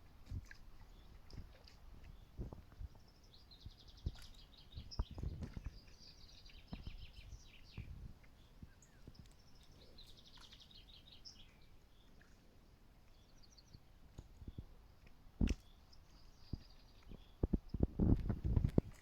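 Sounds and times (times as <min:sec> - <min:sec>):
songbird singing fast trills: 0:03.1 - 0:12.3.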